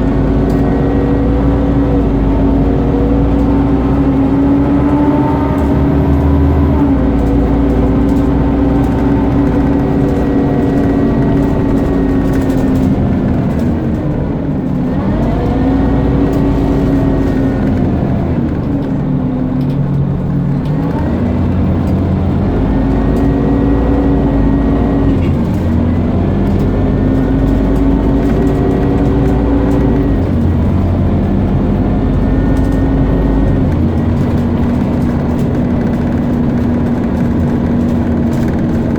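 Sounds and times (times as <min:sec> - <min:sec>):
bus engine pulling: 0:00.0 - 0:38.9.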